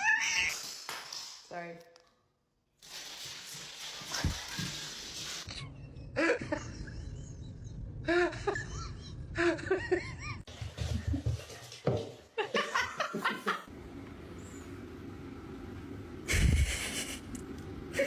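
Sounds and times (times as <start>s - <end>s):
person laughing: 5.7s - 10.4s, 16.3s - 17.4s.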